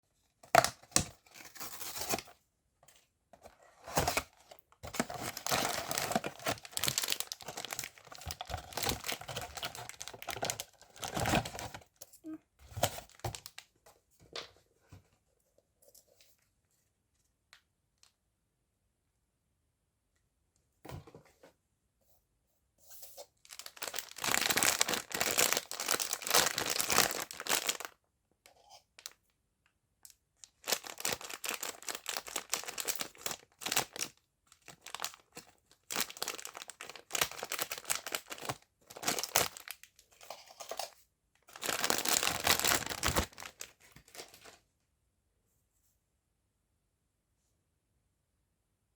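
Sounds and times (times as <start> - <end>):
packaging tearing and crinkling: 3.8 - 11.9, 23.4 - 27.9, 30.5 - 40.9, 41.5 - 44.5.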